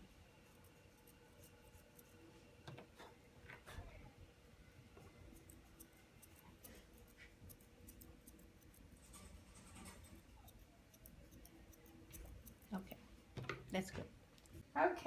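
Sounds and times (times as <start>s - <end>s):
grooming scissors snipping: 5.3s - 13.0s.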